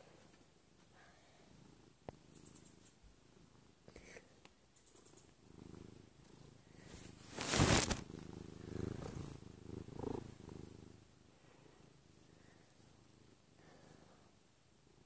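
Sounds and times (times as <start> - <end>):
pet purring: 1.4 - 3.9, 4.8 - 11.1.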